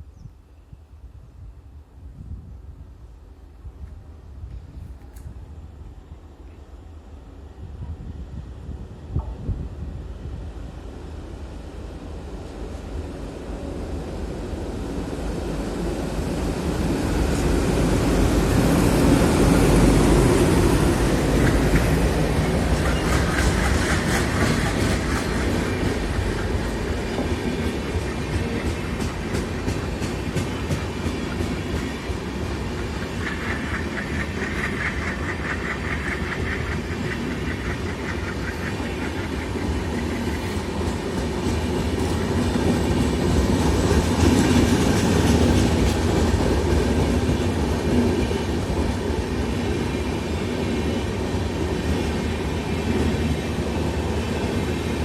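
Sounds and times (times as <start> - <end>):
train wheels clattering over rails: 17.0 - 55.0.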